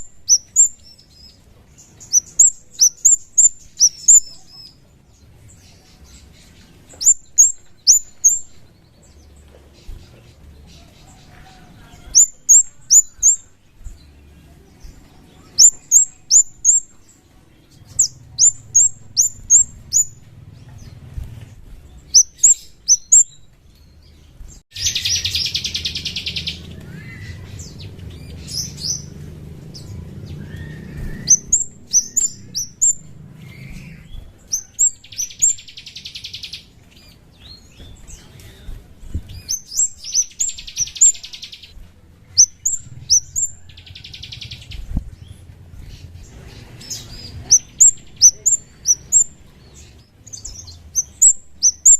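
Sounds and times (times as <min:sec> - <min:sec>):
buzzy rapid bird trill: 0:00.0 - 0:04.8, 0:05.6 - 0:08.7, 0:11.6 - 0:14.2, 0:15.4 - 0:17.1, 0:17.8 - 0:20.3, 0:22.0 - 0:23.4, 0:24.7 - 0:36.7, 0:39.4 - 0:41.7, 0:42.3 - 0:44.8, 0:46.8 - 0:51.9
bird chirps sweeping downward: 0:00.0 - 0:04.9, 0:05.9 - 0:09.4, 0:11.3 - 0:17.1, 0:17.7 - 0:20.3, 0:22.0 - 0:24.1, 0:24.7 - 0:38.3, 0:39.4 - 0:41.7, 0:42.3 - 0:45.0, 0:46.0 - 0:51.9.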